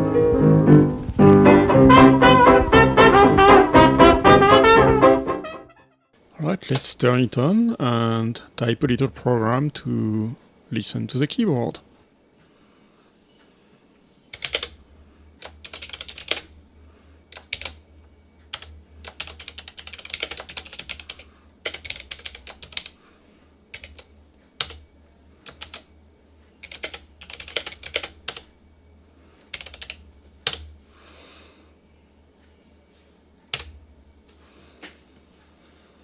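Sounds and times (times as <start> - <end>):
steady low hum: 6.3 - 12.0
typing on mechanical keyboard: 14.3 - 14.8, 15.4 - 16.5, 17.3 - 17.8, 18.5 - 23.0, 23.7 - 24.8, 25.4 - 25.9, 26.6 - 28.5, 29.4 - 30.7.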